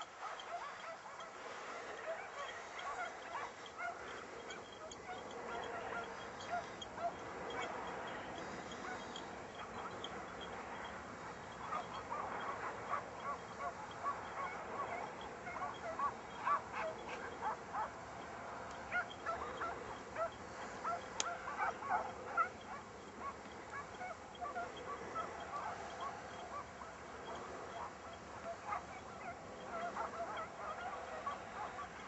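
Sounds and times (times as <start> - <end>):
hounds baying: 0.0 - 32.0.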